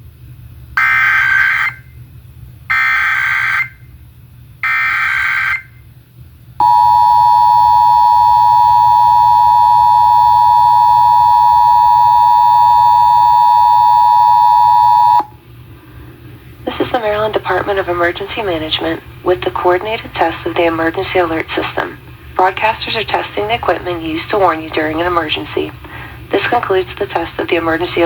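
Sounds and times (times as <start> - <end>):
two-tone attention signal: 6.6 - 15.3.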